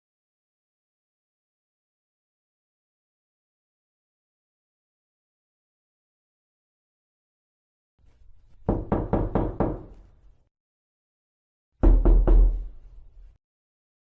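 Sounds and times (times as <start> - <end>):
knuckles knocking on wooden door: 8.7 - 10.0, 11.8 - 12.7.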